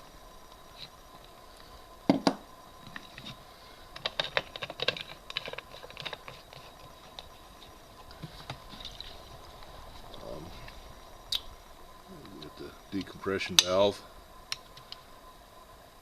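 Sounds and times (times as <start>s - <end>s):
sharp knocks on chainsaw: 2.1s - 2.4s.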